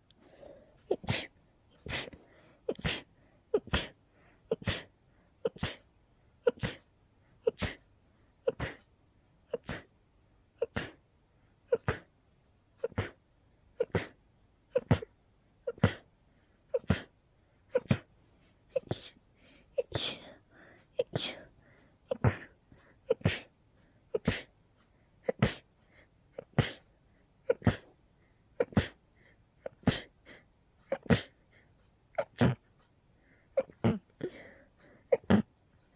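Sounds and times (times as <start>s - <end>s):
person sneezing: 0.3s - 5.8s, 6.4s - 7.8s, 8.4s - 8.9s, 9.5s - 9.9s, 10.6s - 11.0s, 11.7s - 12.1s, 12.8s - 13.2s, 13.8s - 15.1s, 15.7s - 16.1s, 16.7s - 18.1s, 18.7s - 19.2s, 19.8s - 20.4s, 21.0s - 21.5s, 22.1s - 23.5s, 24.1s - 24.5s, 25.2s - 25.7s, 26.4s - 28.0s, 28.6s - 29.0s, 29.7s - 30.2s, 30.8s - 31.4s, 32.2s - 32.6s, 33.6s - 35.5s.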